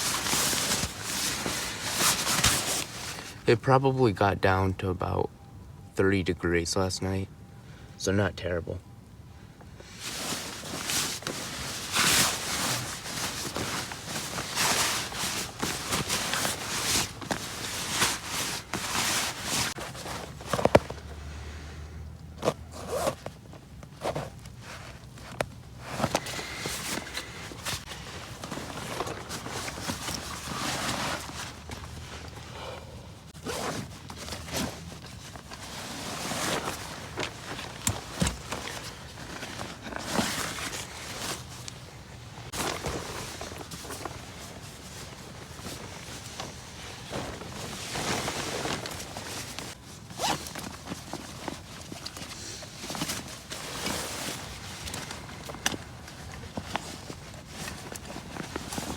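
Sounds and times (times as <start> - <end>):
fabric rustling: 0.0 - 3.5, 9.8 - 21.6, 22.3 - 58.9
zipper zipping: 33.4 - 34.8, 50.2 - 50.5.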